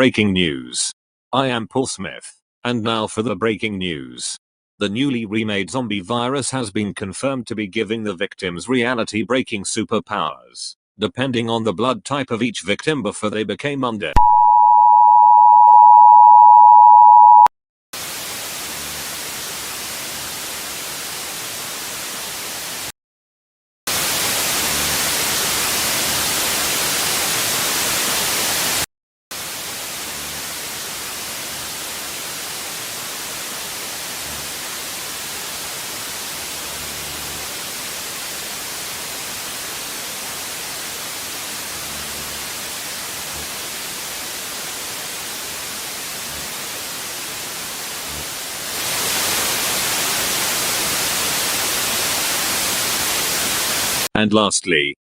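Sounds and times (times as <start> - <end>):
two-tone attention signal: 14.2 - 17.5
static hiss: 18.0 - 22.9, 29.4 - 54.1.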